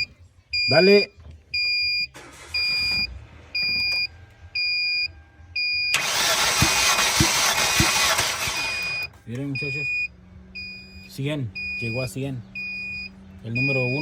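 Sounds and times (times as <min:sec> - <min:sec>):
starter motor cranking engine: 0:02.2 - 0:03.2, 0:05.9 - 0:09.0
electronic beep: 0:08.6 - 0:14.0.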